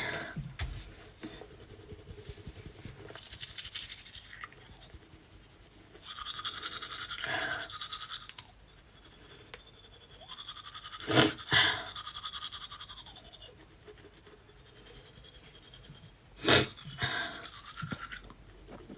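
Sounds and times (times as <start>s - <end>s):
toothbrush scrubbing teeth: 0.9s - 18.9s.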